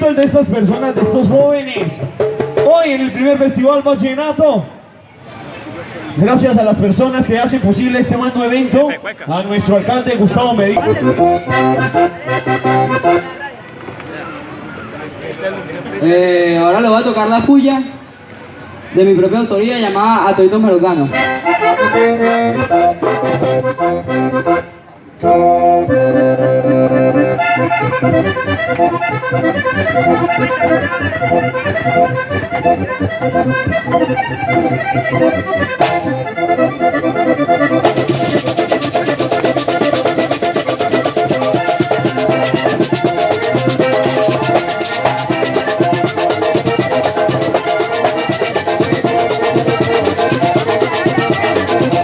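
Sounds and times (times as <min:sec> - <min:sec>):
accordion playing fast music: 0:00.0 - 0:02.7, 0:10.1 - 0:13.5, 0:20.8 - 0:52.0
fast even ticking rhythm: 0:25.9 - 0:52.0.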